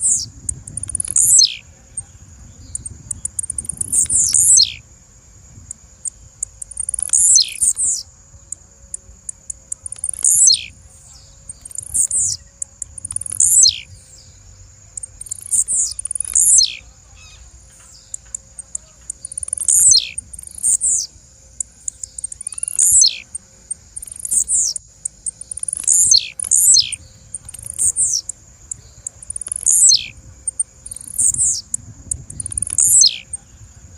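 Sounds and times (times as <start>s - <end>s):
bird singing sharp high phrases: 0.0s - 33.9s
faint high whine: 0.0s - 33.9s
soft high ticks: 11.5s - 13.8s, 15.0s - 16.7s, 21.6s - 33.0s.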